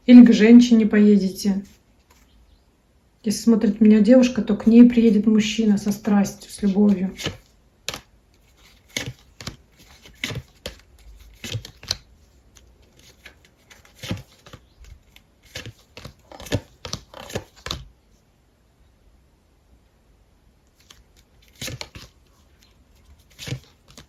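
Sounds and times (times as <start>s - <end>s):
cards shuffled and flicked: 5.8s - 17.9s, 20.8s - 24.0s.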